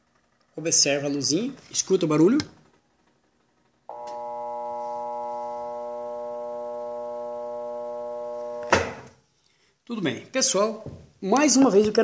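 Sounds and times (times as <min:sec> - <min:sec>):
washing machine motor humming: 0:03.9 - 0:08.7.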